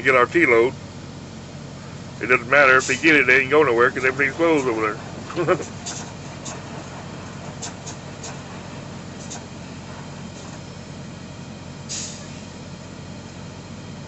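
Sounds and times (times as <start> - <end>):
diesel truck engine idling: 0.0 - 14.0
air hiss: 11.9 - 12.5.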